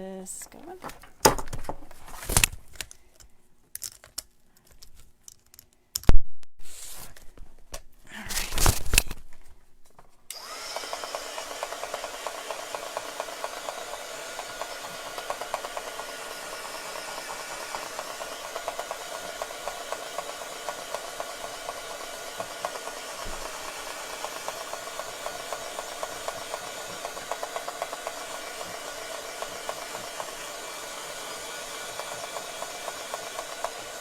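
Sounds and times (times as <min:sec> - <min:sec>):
handling knocks and clicks: 0:00.4 - 0:06.2
heat gun fan blowing: 0:10.3 - 0:34.0.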